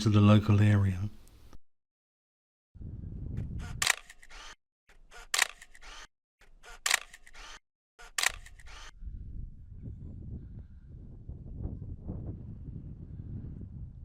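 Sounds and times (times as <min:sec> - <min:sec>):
camera shutter clicks: 0:03.6 - 0:09.0.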